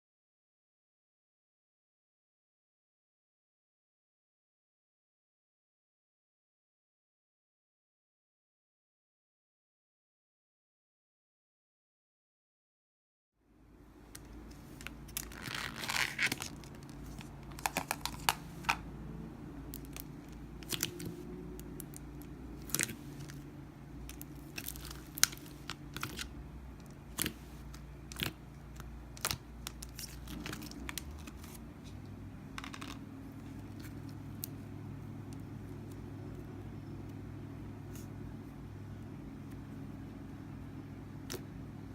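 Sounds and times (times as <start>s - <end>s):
slime squishing and crackling: 14.1s - 18.8s, 19.7s - 32.0s.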